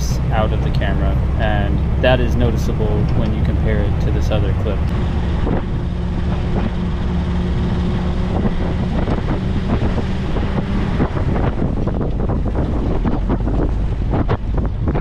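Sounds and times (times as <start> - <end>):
jeep engine humming: 0.0 - 15.0
wind buffeting microphone: 0.0 - 15.0.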